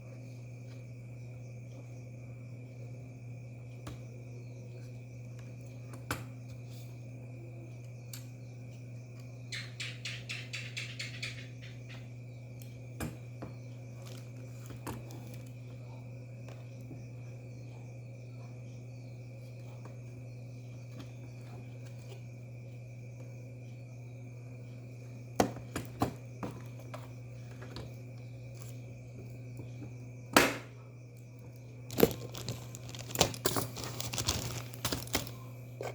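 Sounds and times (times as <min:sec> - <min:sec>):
low electrical hum: 0:00.0 - 0:35.9
packaging crinkling and rustling: 0:31.9 - 0:35.4
small hard objects clicking: 0:31.9 - 0:35.4.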